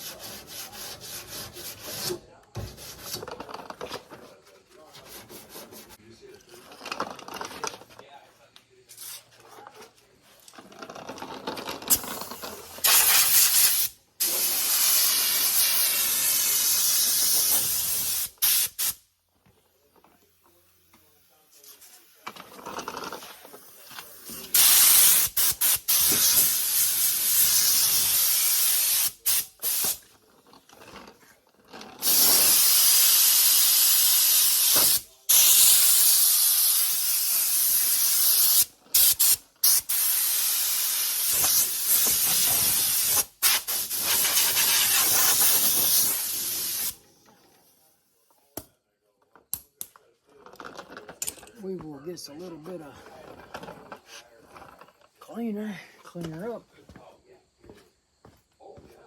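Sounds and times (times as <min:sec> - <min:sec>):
compressed air tool hissing: 0:12.8 - 0:19.0, 0:24.2 - 0:30.0, 0:32.0 - 0:47.0.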